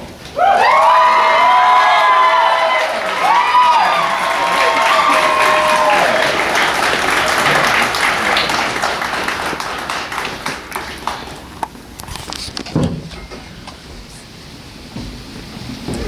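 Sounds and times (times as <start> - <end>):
audience applauding and cheering: 0.2 - 11.8.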